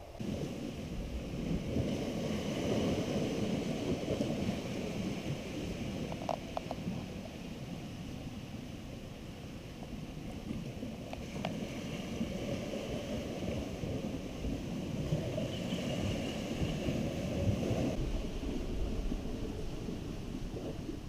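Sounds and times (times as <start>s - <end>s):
ocean surf: 0.0s - 21.0s
wind buffeting microphone: 0.0s - 21.0s
faint ticks: 6.1s - 7.0s, 10.3s - 11.6s.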